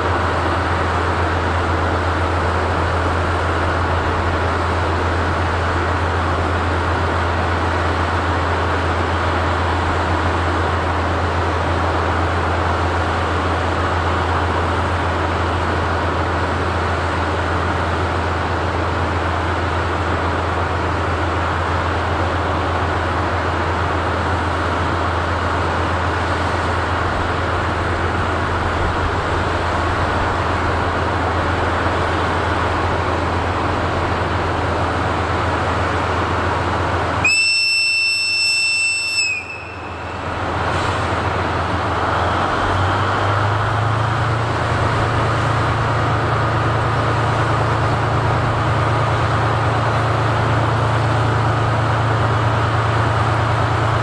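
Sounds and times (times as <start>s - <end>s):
diesel train engines idling: 0.0s - 54.0s.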